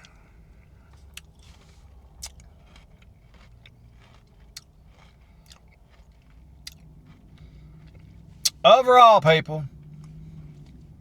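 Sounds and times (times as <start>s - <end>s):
person chewing ice cream: 0.0s - 8.6s.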